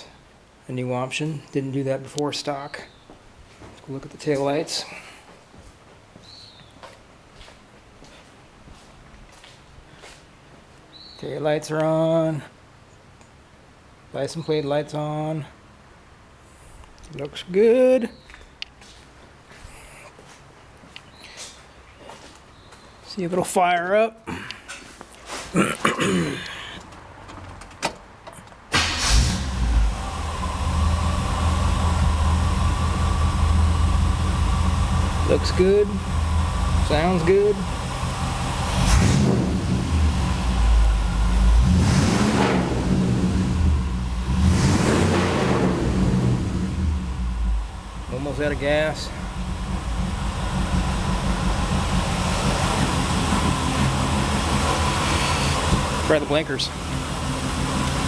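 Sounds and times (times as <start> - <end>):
car engine starting and idling: 28.7 - 58.0.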